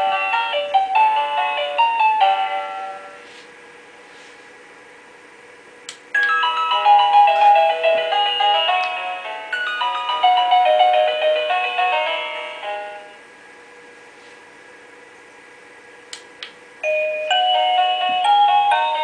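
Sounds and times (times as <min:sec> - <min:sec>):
click: 0:16.1 - 0:16.6.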